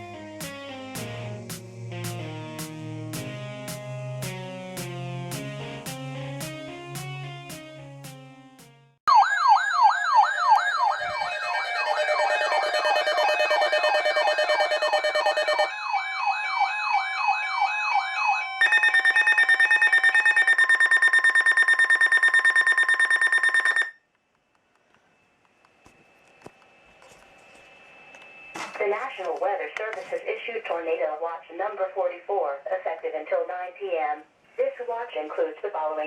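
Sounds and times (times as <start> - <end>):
second yelping siren: 9.1 - 23.9
pulsing high siren tone: 9.1 - 24.0
siren yelping: 9.1 - 24.0.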